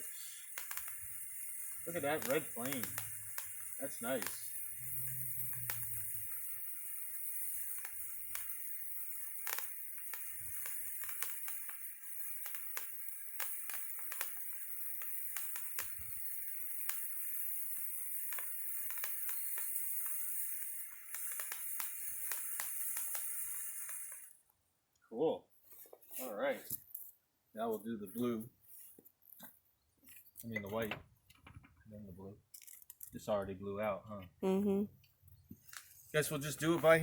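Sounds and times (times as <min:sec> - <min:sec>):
sparkler fizzing and crackling: 0:00.0 - 0:24.4, 0:35.8 - 0:37.0.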